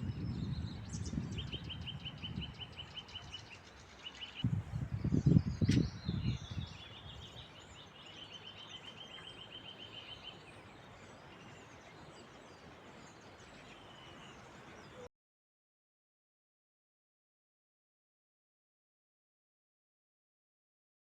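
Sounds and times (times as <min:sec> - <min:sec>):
faint calls of other birds: 0:00.0 - 0:15.1
songbird trilling: 0:00.0 - 0:15.1.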